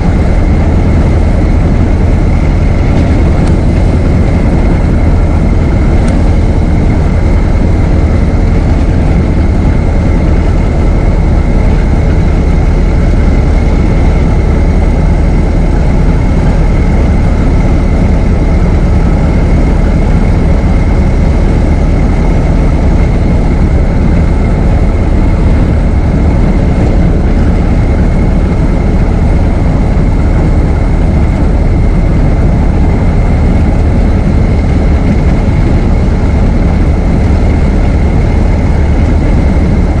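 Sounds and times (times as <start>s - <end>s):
car engine rumbling while driving: 0.0s - 40.0s.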